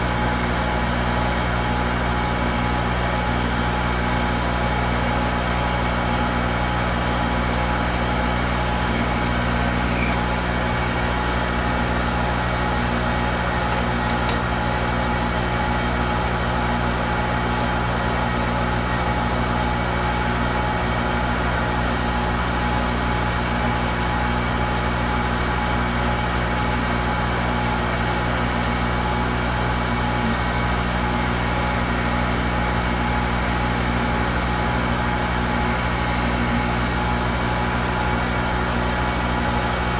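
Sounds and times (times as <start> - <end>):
electric hum: 7.6 - 19.1
steady whining tones: 7.7 - 19.8.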